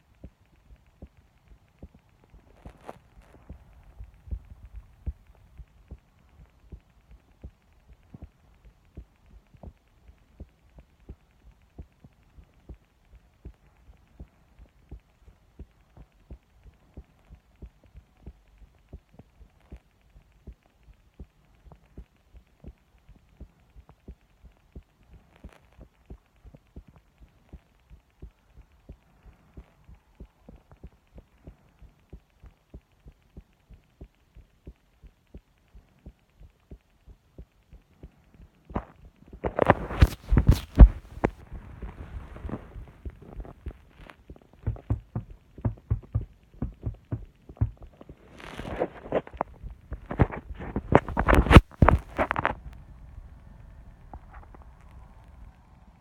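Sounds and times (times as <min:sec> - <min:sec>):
heartbeat thuds: 0:00.0 - 0:52.6.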